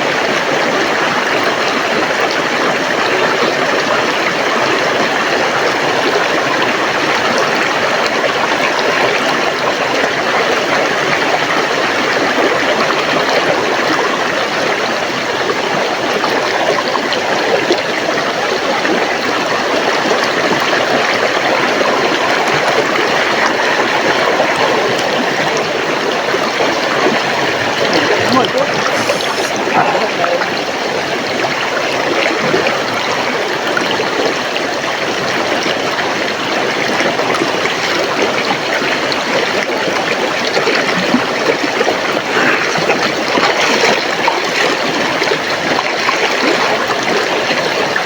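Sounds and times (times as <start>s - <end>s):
river water rushing and gurgling: 18.1s - 48.0s.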